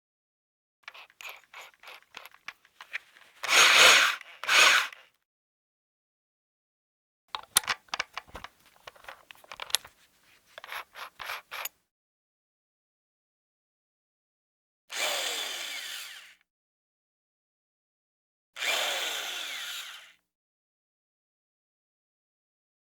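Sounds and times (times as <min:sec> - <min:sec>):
hammer drill running: 0:03.4 - 0:04.9, 0:15.0 - 0:16.3, 0:18.6 - 0:20.1
clicks and knocks: 0:07.4 - 0:09.9.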